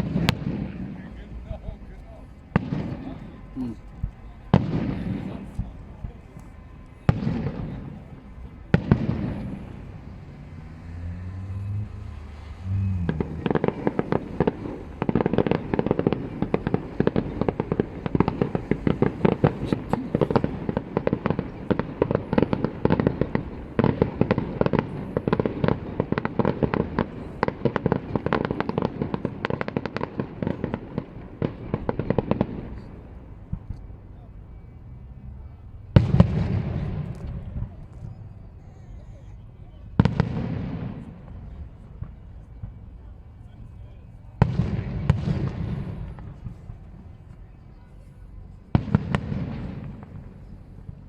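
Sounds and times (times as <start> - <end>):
firework bangs: 0.0 - 51.0
firework shell bursts and crackling: 12.4 - 33.9.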